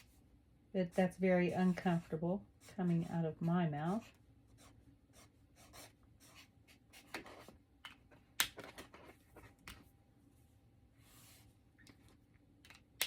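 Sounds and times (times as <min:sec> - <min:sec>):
marker writing on paper: 0:03.9 - 0:07.0.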